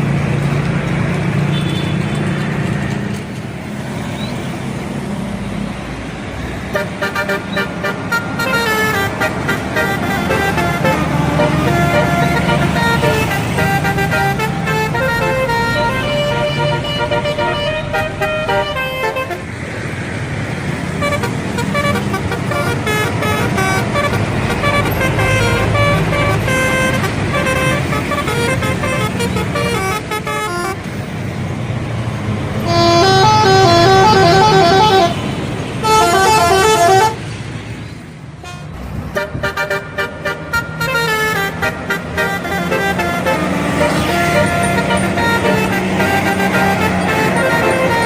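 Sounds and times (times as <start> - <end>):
bus engine running: 0.0 - 48.0
bus horns playing multi-note tunes: 1.5 - 2.2, 6.7 - 19.6, 20.9 - 31.0, 32.5 - 37.4, 38.4 - 48.0.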